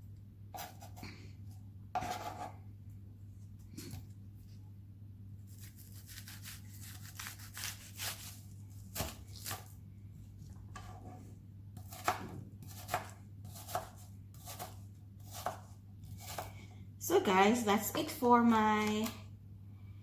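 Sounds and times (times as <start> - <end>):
low steady hum: 0.0 - 20.0
knife chopping on cutting board: 6.1 - 9.7, 11.8 - 16.5.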